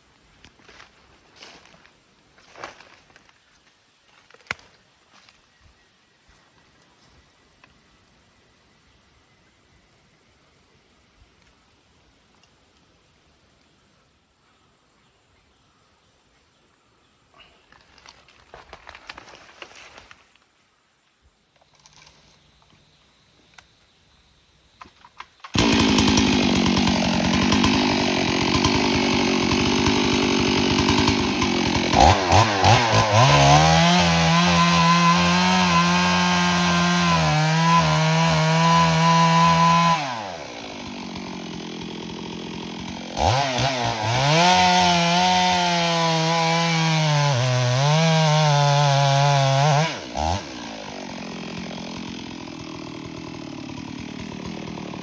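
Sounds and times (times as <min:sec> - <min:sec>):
chainsaw running: 0:25.5 - 0:55.0.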